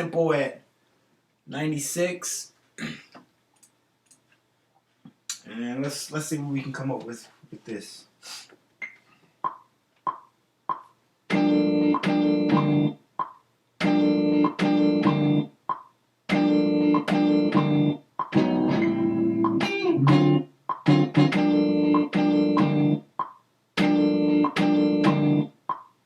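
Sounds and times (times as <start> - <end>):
plucked guitar notes: 11.3 - 12.9, 13.8 - 15.5, 16.3 - 23.0, 23.8 - 25.5
chopped guitar chords: 11.3 - 13.0, 13.8 - 15.5, 16.3 - 23.1, 23.8 - 25.6.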